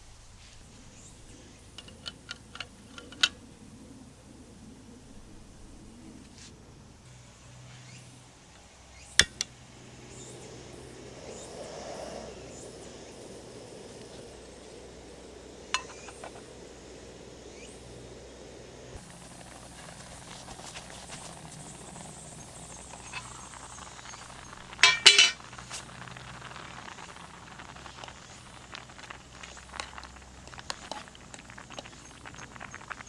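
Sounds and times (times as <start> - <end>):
small ticks and knocks: 1.7 - 3.4, 15.8 - 16.5, 22.7 - 33.0
metal utensils clinking: 15.8 - 16.2, 24.7 - 25.4.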